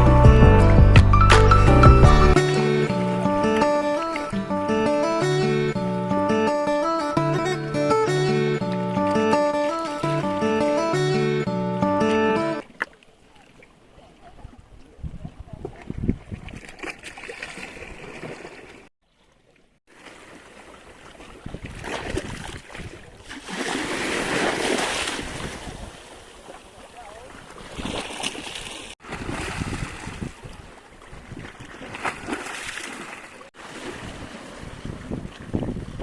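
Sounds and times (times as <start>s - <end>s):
ocean waves washing: 1.3s - 12.7s, 23.3s - 36.0s
wind buffeting microphone: 14.4s - 16.8s, 29.1s - 32.0s, 33.9s - 36.0s.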